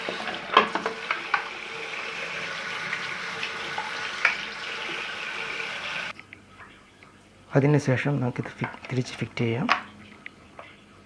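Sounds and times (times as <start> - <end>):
plastic clicks and knocks: 0.0 - 1.5
water running from a tap: 0.0 - 6.1.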